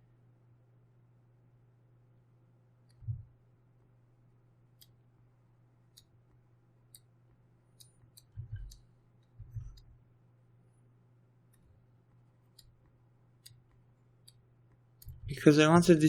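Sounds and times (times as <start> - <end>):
low electrical hum: 0.0 - 16.0
dull low thumps: 8.4 - 8.8, 9.4 - 9.8.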